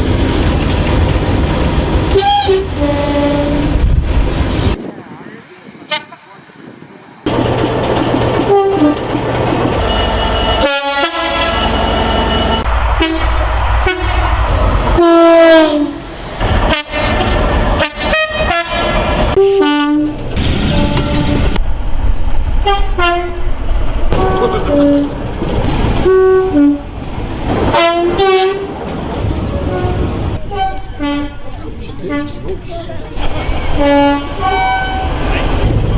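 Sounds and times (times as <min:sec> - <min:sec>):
train rumble and wheel clatter: 0:00.0 - 0:35.9
two-tone train horn blasts: 0:02.1 - 0:03.7, 0:08.4 - 0:09.1, 0:09.8 - 0:16.1, 0:16.7 - 0:21.6, 0:22.6 - 0:23.4, 0:24.1 - 0:25.2, 0:26.0 - 0:26.8, 0:27.7 - 0:28.7, 0:29.6 - 0:31.4, 0:33.7 - 0:35.2.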